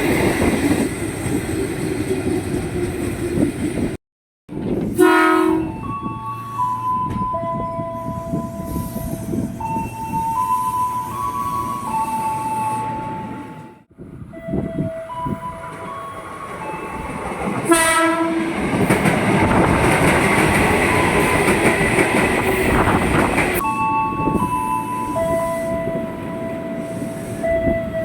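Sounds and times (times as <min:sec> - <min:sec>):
train rumbling: 0:00.0 - 0:28.0
electric train horn blast: 0:05.0 - 0:05.8, 0:17.7 - 0:18.6.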